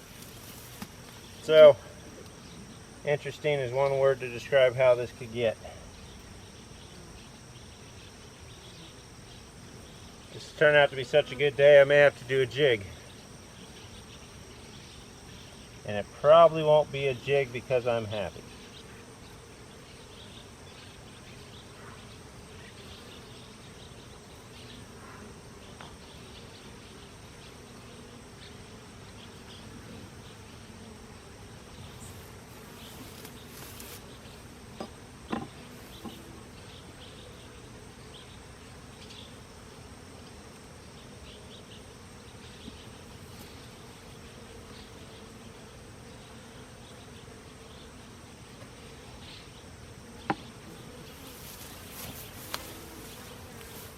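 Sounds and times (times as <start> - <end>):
honeybees buzzing: 0.0 - 53.9
light knocks: 34.8 - 36.2.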